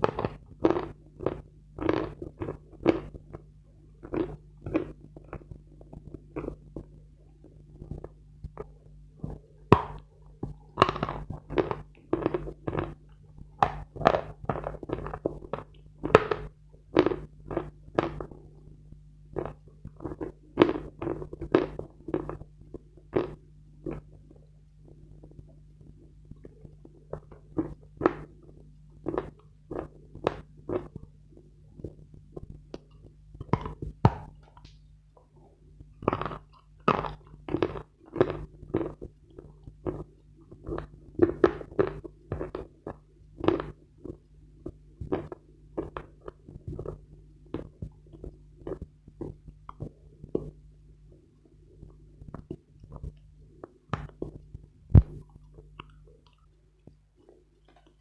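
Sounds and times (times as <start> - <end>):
chalk crunching while chewed: 0.0 - 3.4, 4.0 - 18.5, 19.3 - 24.4, 26.3 - 31.1, 35.9 - 50.6.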